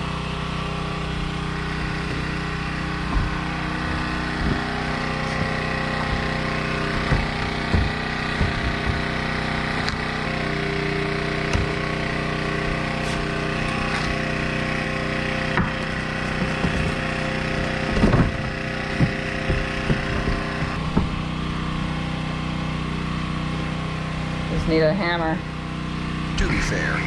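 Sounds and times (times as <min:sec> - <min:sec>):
steady mechanical hum: 0:00.0 - 0:27.0
wood knocking and creaking: 0:01.1 - 0:14.5, 0:15.4 - 0:21.3.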